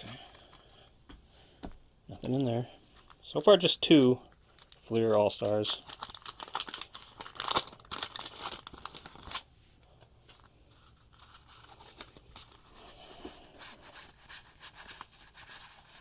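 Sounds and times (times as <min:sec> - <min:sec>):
wax paper wrapper crinkling and tearing: 0:04.3 - 0:09.5, 0:10.3 - 0:16.0
cards rustling: 0:04.3 - 0:16.0.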